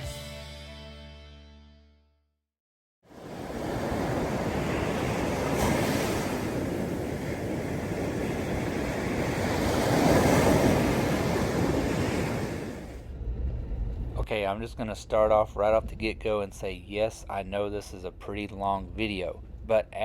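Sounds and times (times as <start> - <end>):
strong wind on microphone: 3.2 - 14.2.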